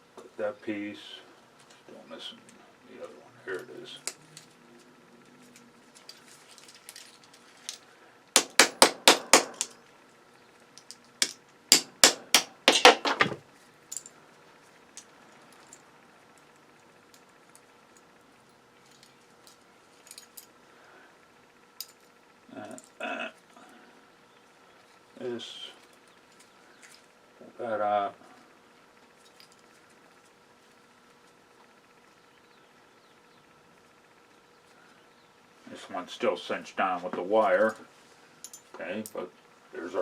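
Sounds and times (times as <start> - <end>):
hammer striking metal: 8.4 - 9.8, 11.2 - 13.4.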